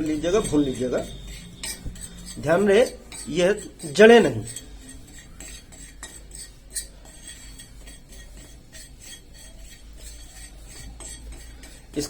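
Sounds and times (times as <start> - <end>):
spoon scraping and clinking on pan: 0.0 - 12.0.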